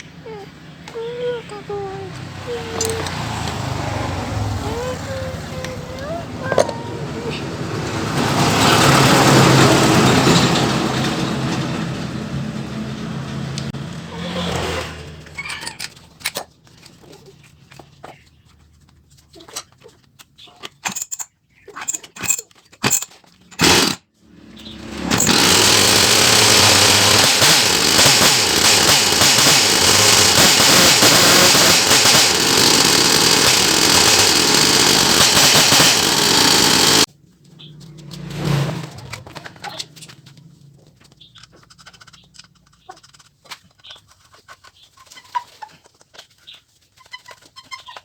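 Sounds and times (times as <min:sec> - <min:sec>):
chainsaw engine running: 0:00.0 - 0:15.4, 0:23.5 - 0:37.1.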